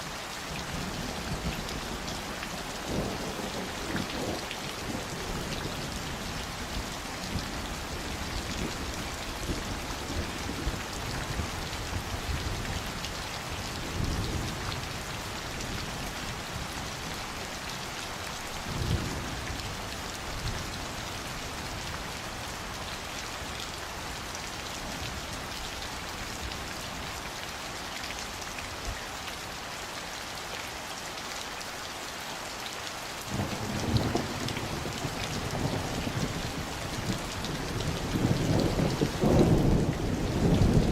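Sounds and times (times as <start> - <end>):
steady rain falling: 0.0 - 40.9
thunder rumbling: 0.8 - 12.5, 33.3 - 40.9.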